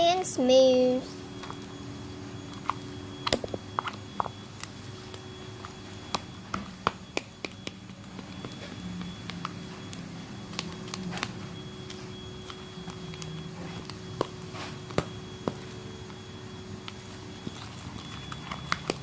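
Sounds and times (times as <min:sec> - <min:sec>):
faint steady hum: 0:00.0 - 0:19.0
slime clicking and popping: 0:05.6 - 0:09.5, 0:16.8 - 0:19.0.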